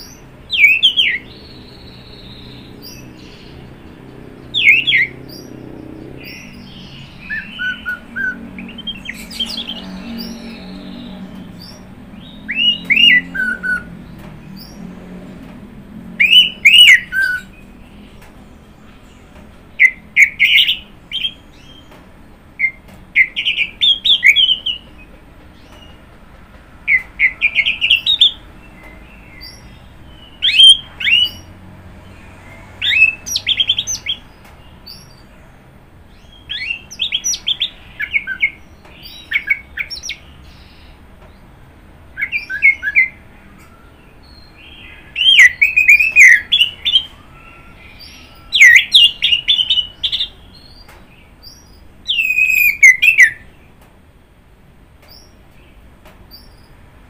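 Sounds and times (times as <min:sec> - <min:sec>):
thrush singing whistles: 0:00.0 - 0:03.0, 0:04.5 - 0:05.4, 0:06.2 - 0:13.9, 0:16.2 - 0:17.5, 0:30.3 - 0:31.5, 0:42.2 - 0:43.8, 0:44.7 - 0:50.8, 0:51.5 - 0:53.5.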